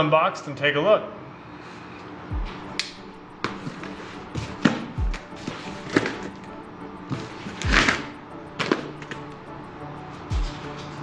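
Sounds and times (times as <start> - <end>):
background music with beat: 2.3 - 11.0.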